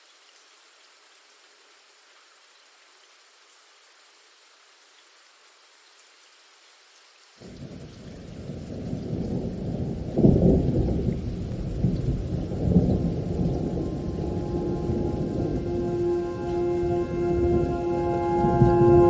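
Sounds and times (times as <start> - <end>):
steady rain: 0.0 - 19.0
thunder rumbling: 7.4 - 19.0
musical tones: 13.4 - 19.0.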